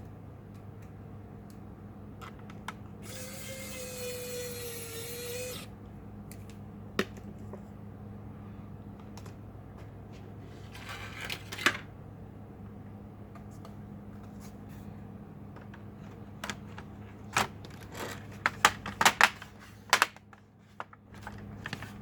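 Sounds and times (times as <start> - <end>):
low steady hum: 0.0 - 22.0
electric screwdriver whirring: 3.0 - 5.7.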